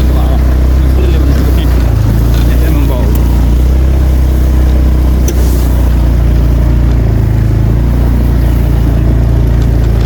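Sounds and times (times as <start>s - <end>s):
small engine humming: 0.0s - 10.0s.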